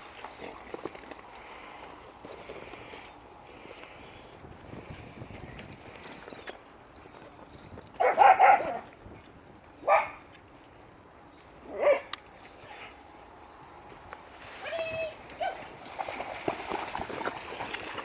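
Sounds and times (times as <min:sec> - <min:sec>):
dog barking: 0:08.0 - 0:08.8, 0:09.8 - 0:10.2, 0:11.7 - 0:12.1.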